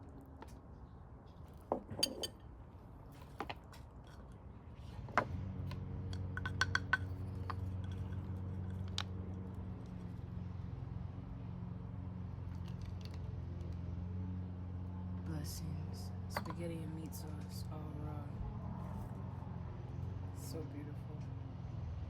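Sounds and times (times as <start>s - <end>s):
dishes and utensils clinking: 1.8s - 2.4s.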